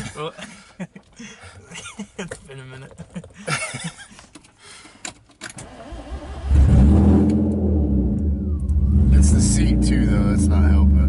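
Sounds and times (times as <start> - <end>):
car engine starting and running: 5.4 - 11.0.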